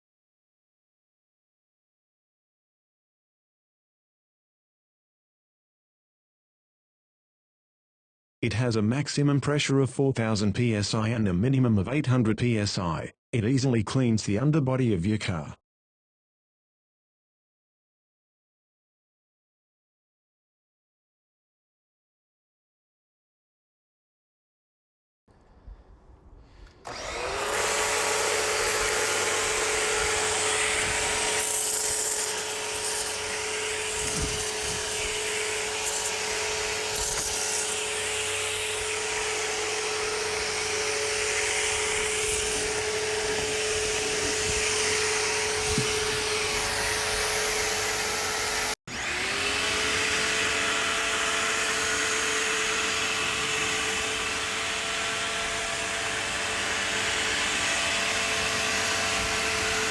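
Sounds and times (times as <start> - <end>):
pressure washer motor running: 26.8 - 59.9.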